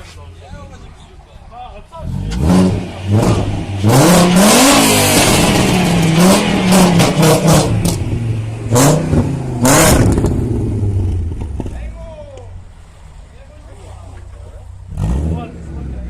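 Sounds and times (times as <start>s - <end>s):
car engine revving: 1.9s - 12.0s, 14.6s - 16.0s.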